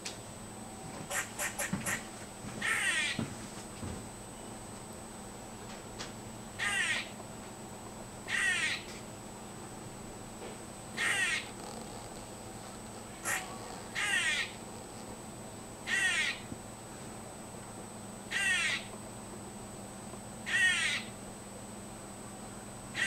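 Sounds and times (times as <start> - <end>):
squirrel raspy calls: 1.1 - 3.2, 6.6 - 7.2, 8.2 - 9.0, 11.0 - 12.0, 13.0 - 14.8, 15.8 - 16.5, 18.3 - 18.9, 20.4 - 21.2.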